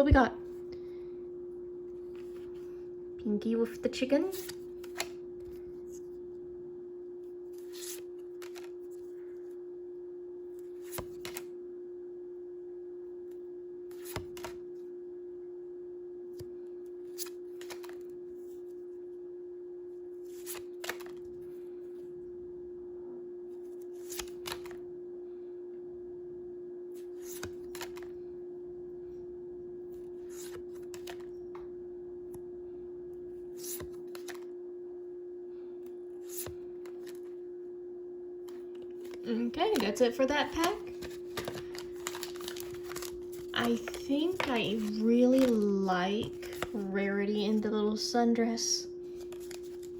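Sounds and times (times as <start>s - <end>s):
steady humming tone: 0.0s - 49.9s
trading cards clicking: 39.0s - 46.8s.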